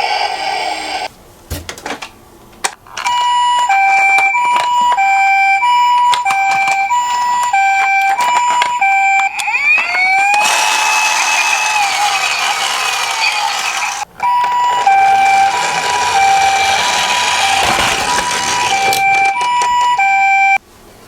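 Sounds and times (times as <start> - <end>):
toy siren: 3.0 - 20.6
rattling noise: 15.4 - 20.0.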